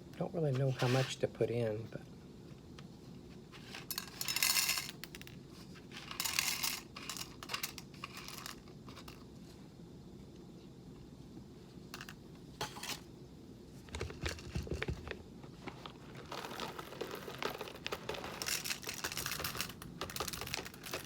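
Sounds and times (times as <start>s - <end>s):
bag rustling: 14.0s - 21.0s
coffee beans poured into grinder: 15.8s - 21.0s.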